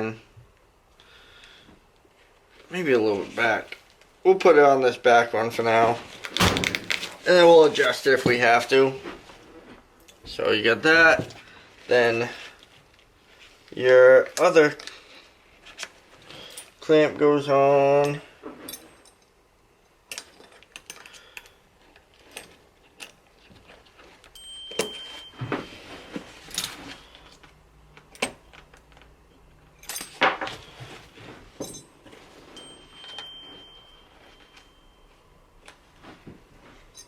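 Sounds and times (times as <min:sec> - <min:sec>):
metal clamp hardware clinking: 0:24.2 - 0:25.2, 0:29.7 - 0:30.6, 0:31.6 - 0:32.0.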